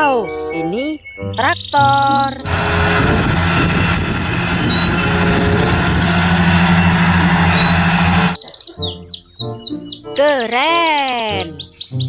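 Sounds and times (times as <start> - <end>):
tractor engine running: 2.4 - 8.4
short chirping glides: 2.4 - 8.7.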